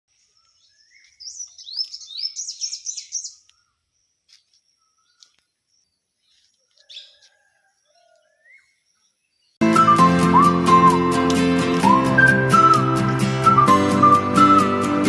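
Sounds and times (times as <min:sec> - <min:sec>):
bird chirping: 0:00.1 - 0:10.9.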